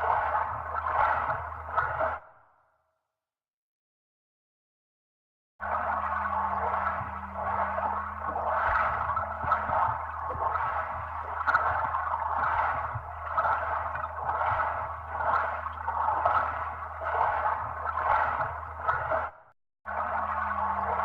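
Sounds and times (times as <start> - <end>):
steady low hum: 0.0 - 2.2, 5.6 - 19.4
underwater bubbling: 0.0 - 2.2, 5.6 - 21.0.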